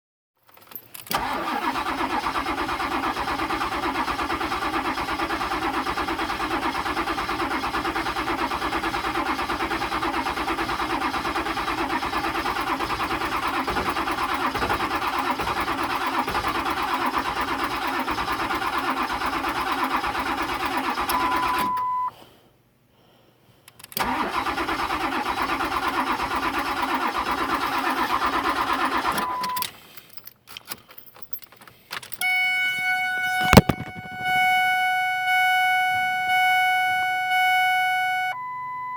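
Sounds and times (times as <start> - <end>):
diesel engine starter cranking: 0.6 - 21.9, 23.7 - 38.4
steady beep: 32.2 - 38.9.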